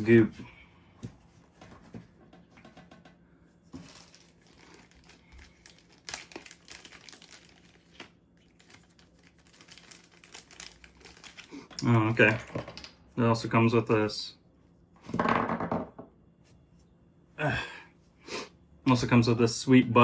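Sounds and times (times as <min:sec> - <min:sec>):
packaging crinkling and rustling: 0:03.7 - 0:12.6
small parts clicking and knocking: 0:09.4 - 0:13.1.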